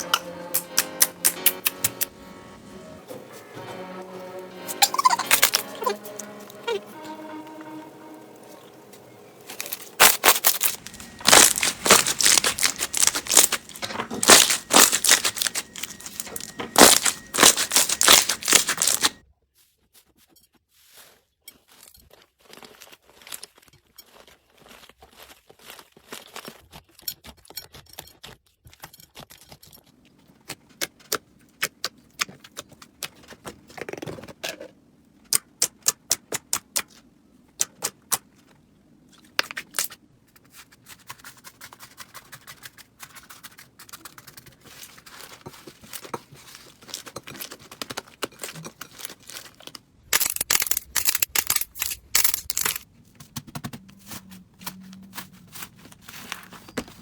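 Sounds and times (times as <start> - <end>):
slime crackling: 9.5 - 19.2.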